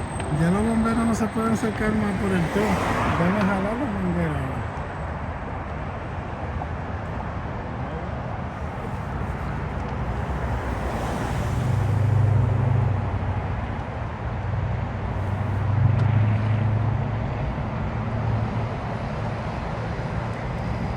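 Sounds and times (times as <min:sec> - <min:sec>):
vehicle engines and tyres: 0:00.0 - 0:20.9
low engine hum: 0:07.1 - 0:20.9.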